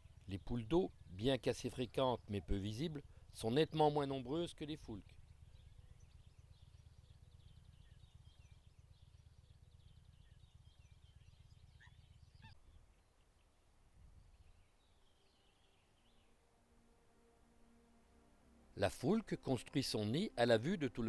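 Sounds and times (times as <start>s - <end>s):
bird chirps and trills: 0.0s - 13.5s.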